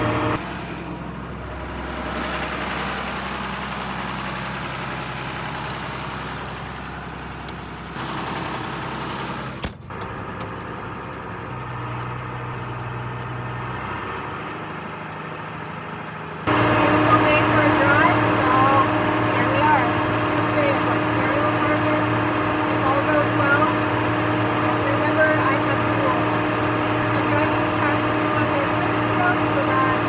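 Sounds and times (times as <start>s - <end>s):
tractor engine running: 0.0s - 30.0s.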